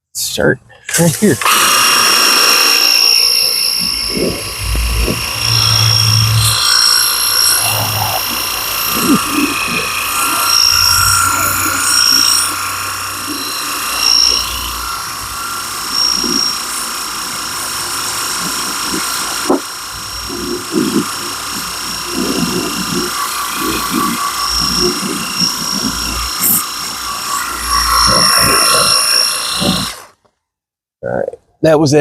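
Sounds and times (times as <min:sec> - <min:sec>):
electric pump whining: 0:00.9 - 0:30.3
water spray hissing: 0:01.0 - 0:29.9.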